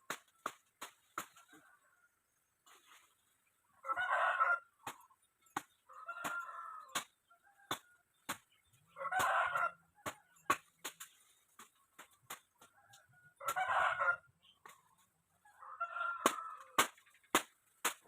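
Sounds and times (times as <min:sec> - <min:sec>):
chicken calls: 0:03.7 - 0:17.2.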